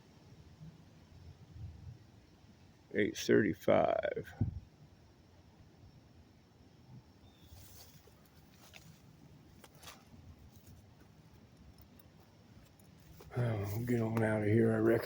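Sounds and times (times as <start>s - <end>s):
faint rustles: 7.3s - 14.4s
soft ticks: 11.0s - 13.3s.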